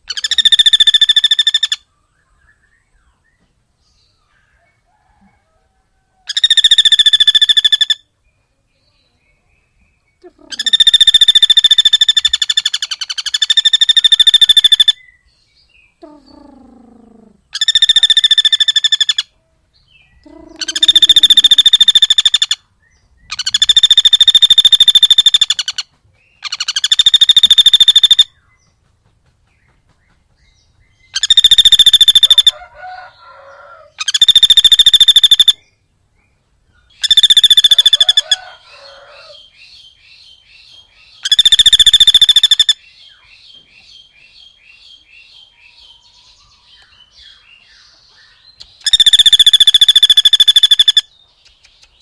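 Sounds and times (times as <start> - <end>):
lower falling calls: 10.1 - 15.2, 15.9 - 28.4, 31.0 - 35.7, 36.8 - 39.5, 40.8 - 42.8, 45.0 - 52.0
rapid harsh chattering call: 10.5 - 14.9, 20.5 - 22.6, 23.3 - 25.8, 26.4 - 28.3, 31.2 - 32.5, 34.0 - 35.6, 37.0 - 38.4, 41.2 - 42.8, 48.6 - 51.0.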